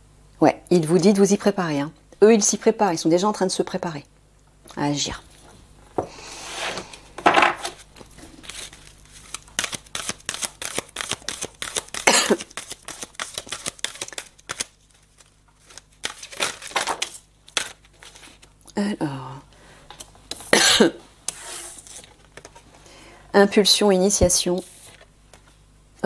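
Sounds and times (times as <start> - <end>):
cards being shuffled: 6.5 - 18.6, 21.3 - 22.8, 24.5 - 25.6.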